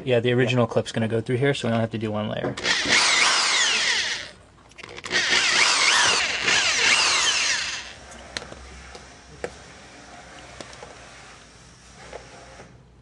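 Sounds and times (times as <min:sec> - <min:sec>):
power drill boring through plastic: 0:02.6 - 0:08.0.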